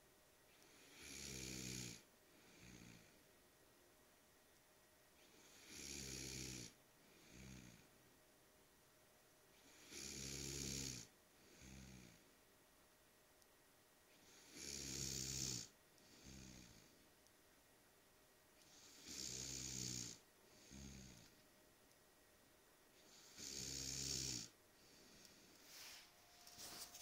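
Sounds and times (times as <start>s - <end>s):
loud snoring: 0.7s - 3.2s, 5.2s - 7.9s, 9.6s - 12.2s, 14.2s - 16.9s, 18.7s - 21.3s, 23.1s - 25.4s.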